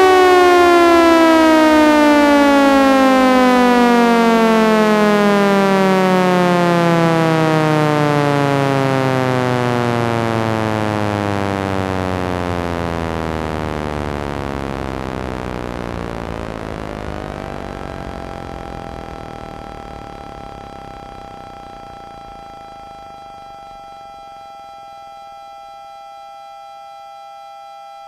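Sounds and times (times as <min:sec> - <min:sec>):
warning siren winding down: 0:00.0 - 0:28.0.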